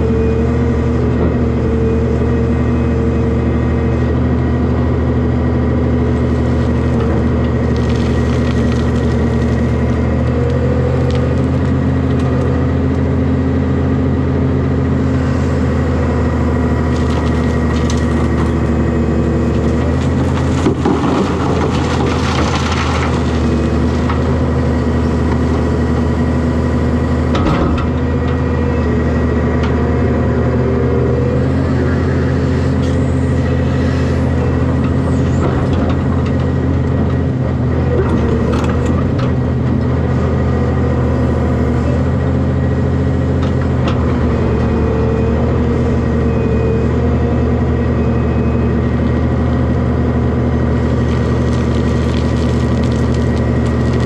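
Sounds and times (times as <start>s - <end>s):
heavy diesel engine running: 0.0s - 54.0s
dumped material crashing: 6.2s - 11.8s, 16.2s - 28.0s, 50.7s - 54.0s.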